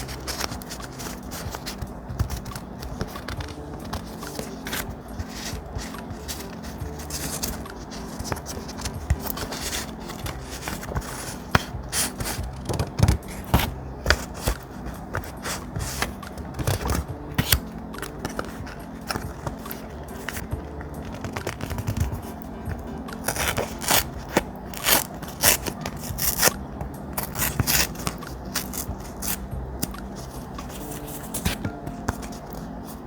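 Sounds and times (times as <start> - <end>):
thick paper rustling and scraping: 0.0 - 33.0
paper snips: 23.2 - 26.6, 27.2 - 30.0.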